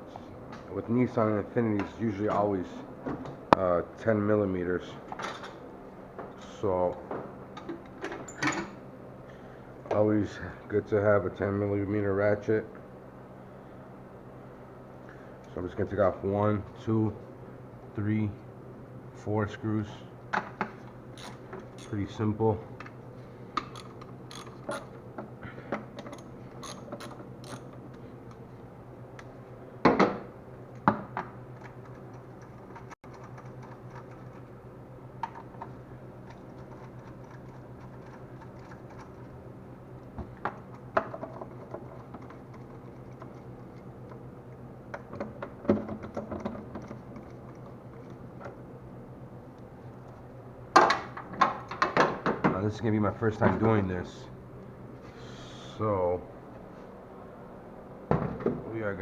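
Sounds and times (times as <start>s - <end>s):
steady low hum: 0.0s - 59.0s
socket ratchet clicking: 21.2s - 22.0s, 23.6s - 24.9s, 26.0s - 27.8s
knocks of tools and parts: 29.8s - 31.4s, 50.8s - 52.6s, 58.1s - 58.7s.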